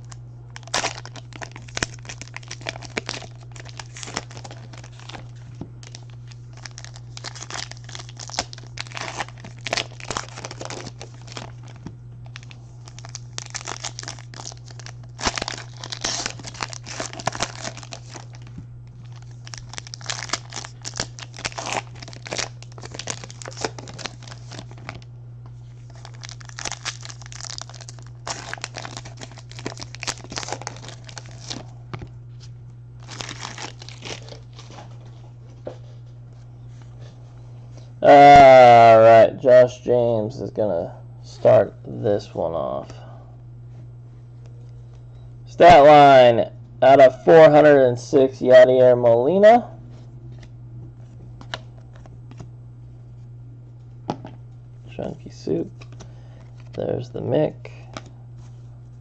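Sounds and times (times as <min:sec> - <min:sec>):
plastic and foil wrapping crinkling: 0:00.0 - 0:25.0, 0:25.7 - 0:31.7, 0:33.0 - 0:35.2
steady low hum: 0:00.0 - 0:59.0.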